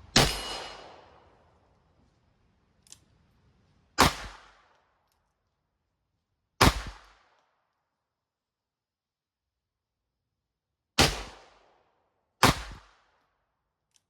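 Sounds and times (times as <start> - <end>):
pistol shots: 0.0 - 1.5, 4.0 - 4.7, 6.6 - 7.3, 11.0 - 11.6, 12.4 - 13.0.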